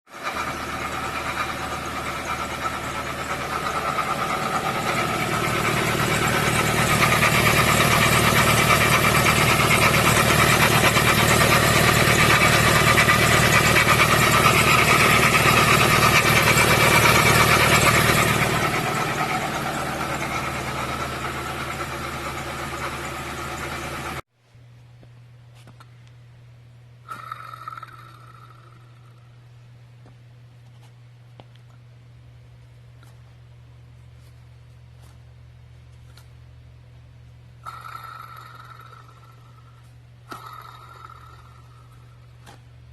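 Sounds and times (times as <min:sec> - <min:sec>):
diesel engine idling: 0:00.2 - 0:24.2.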